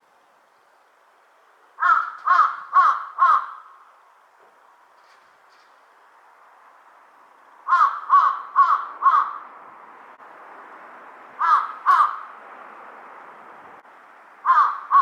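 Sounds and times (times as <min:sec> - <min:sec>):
crow cawing: 0:01.8 - 0:03.8, 0:07.7 - 0:09.5, 0:11.4 - 0:12.3, 0:14.4 - 0:15.0.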